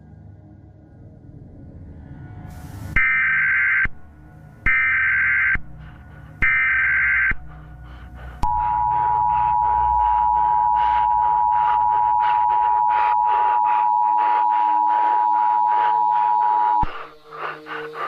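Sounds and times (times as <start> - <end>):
pulsing noise: 2.9 - 18.0
two-tone alarm: 3.0 - 4.0, 4.7 - 5.7, 6.4 - 7.4, 8.4 - 18.0.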